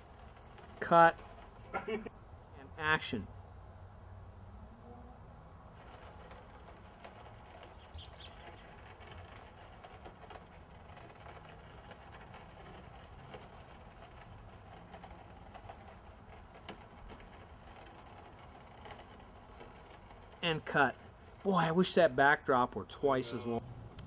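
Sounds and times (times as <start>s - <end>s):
background hum: 0.0s - 24.0s
faint bird chirps: 7.7s - 8.8s.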